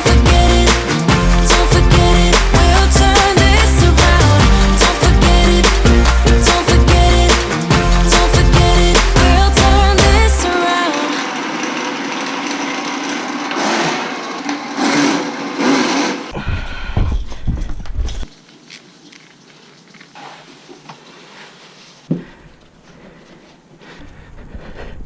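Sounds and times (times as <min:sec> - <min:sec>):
mechanical tool whirring: 0:11.1 - 0:16.3.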